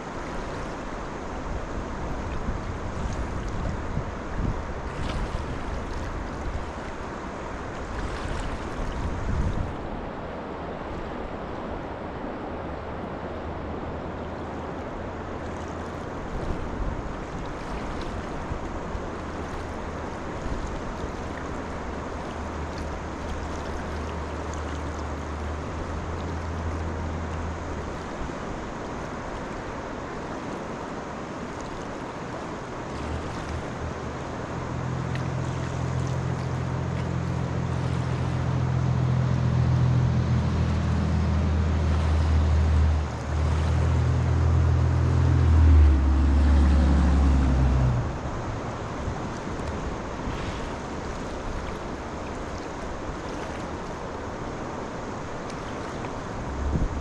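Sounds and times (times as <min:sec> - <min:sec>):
wind on microphone: 0:00.0 - 0:10.1, 0:55.8 - 0:57.0
low motor hum: 0:00.0 - 0:31.2, 0:31.8 - 0:57.0
river water rushing: 0:00.0 - 0:57.0.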